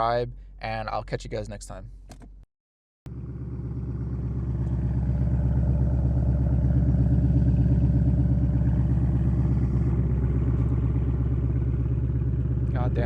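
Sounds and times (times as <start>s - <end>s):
car exhaust idling with lope: 3.1s - 13.0s.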